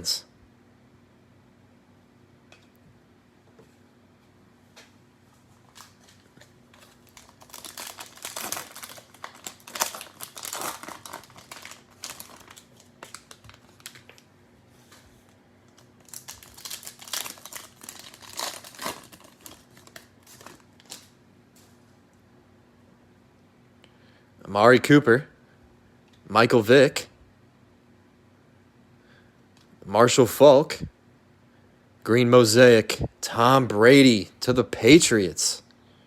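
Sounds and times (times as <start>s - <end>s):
cellophane wrapper crinkling: 5.5s - 14.3s, 15.7s - 21.8s.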